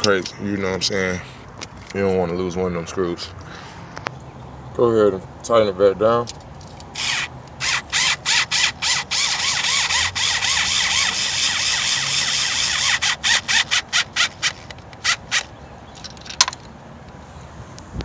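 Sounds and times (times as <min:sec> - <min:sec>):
grinding: 0:06.9 - 0:15.4
hand tool tightening screw: 0:06.9 - 0:15.5.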